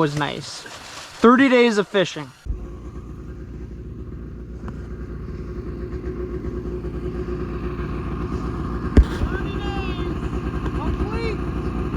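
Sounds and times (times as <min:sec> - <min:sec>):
vehicle engine running: 0:02.4 - 0:11.9.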